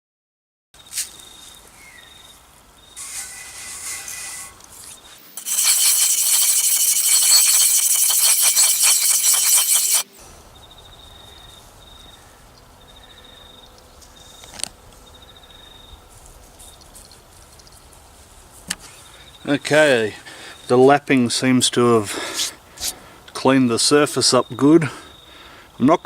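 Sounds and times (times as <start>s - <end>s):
crickets chirping: 0.8s - 16.0s, 18.8s - 19.6s, 20.2s - 20.9s, 24.2s - 25.9s
stone scraping on concrete: 3.0s - 10.2s.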